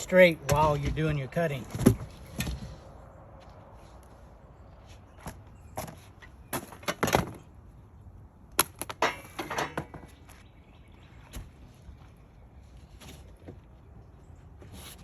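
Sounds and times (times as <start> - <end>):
parts knocking and clattering: 8.6 - 10.2.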